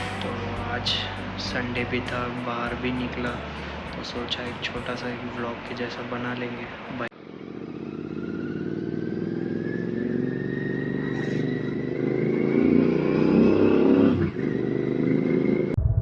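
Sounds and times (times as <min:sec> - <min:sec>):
motorcycle engine accelerating: 0:07.1 - 0:15.8.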